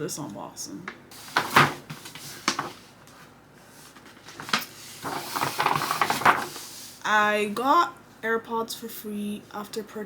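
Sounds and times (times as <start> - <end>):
packaging rustling and crinkling: 1.1 - 3.0, 3.9 - 6.8
packaging scraping: 4.2 - 6.9.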